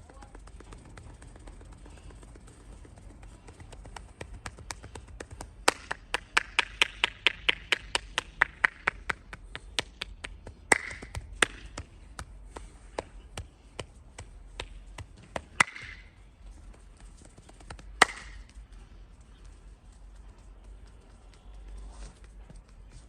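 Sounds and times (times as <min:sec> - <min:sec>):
rapid hand slaps on body: 0:03.2 - 0:16.1, 0:17.3 - 0:18.5.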